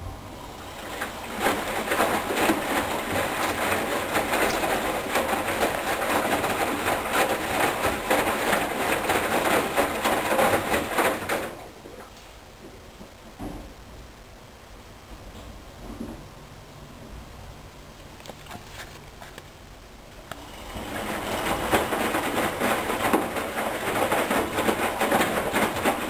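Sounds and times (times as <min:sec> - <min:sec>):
water sloshing in washing machine: 0:00.3 - 0:12.0, 0:20.4 - 0:26.0.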